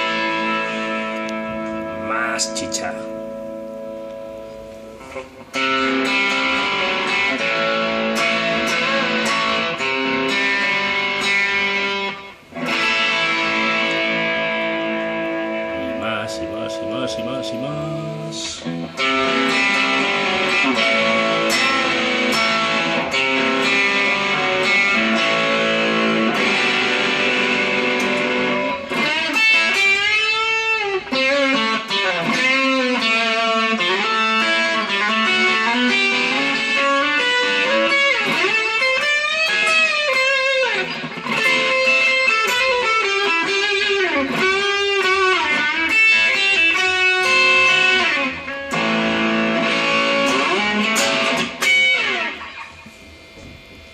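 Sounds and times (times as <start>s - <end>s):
overdriven electric guitar: 0.0s - 53.9s.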